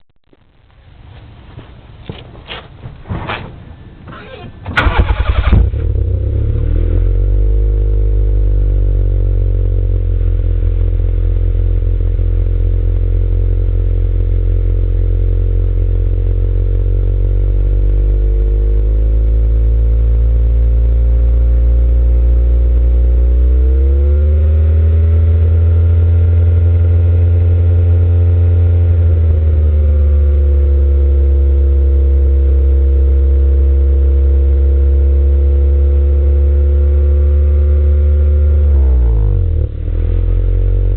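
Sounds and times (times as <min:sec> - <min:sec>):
engine idling with misfire: 0:04.1 - 0:06.3.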